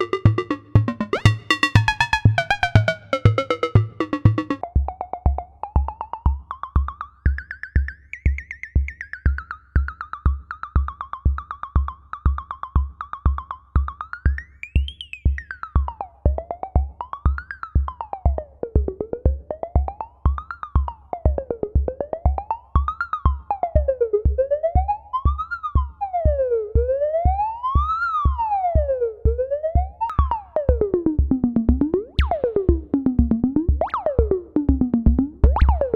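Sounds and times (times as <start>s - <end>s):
low synth kick pulse: 0.0s - 4.6s, 31.4s - 35.9s.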